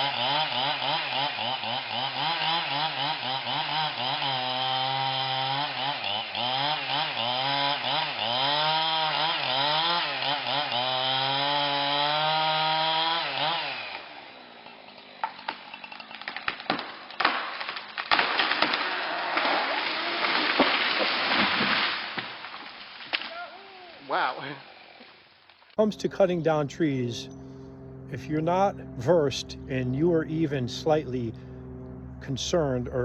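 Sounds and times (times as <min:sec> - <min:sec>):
chainsaw cutting wood: 0:00.0 - 0:25.8
wood cracking and snapping: 0:15.2 - 0:23.4
tree falling: 0:15.2 - 0:25.7.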